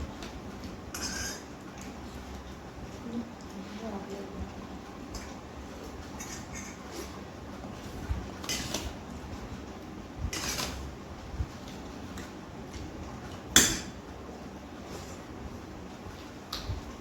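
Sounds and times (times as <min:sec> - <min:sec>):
cutlery scraping on plates: 0:01.0 - 0:01.5, 0:06.2 - 0:07.1.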